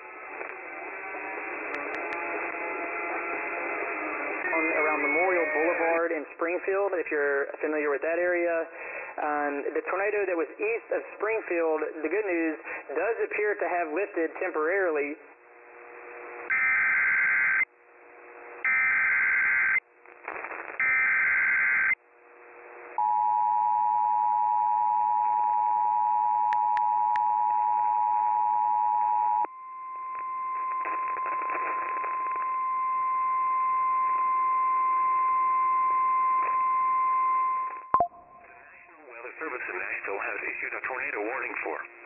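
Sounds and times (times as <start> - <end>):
two-tone attention signal: 37.5 - 38.5.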